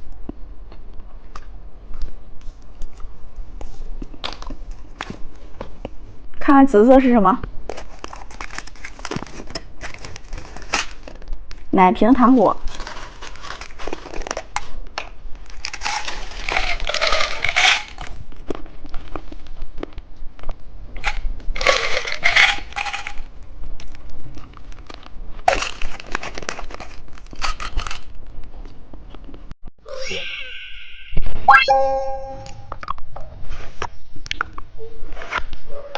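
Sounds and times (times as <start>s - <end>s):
plastic packaging crinkling: 7.7s - 11.3s, 12.6s - 14.8s, 15.4s - 19.3s, 21.0s - 23.2s, 24.8s - 28.2s.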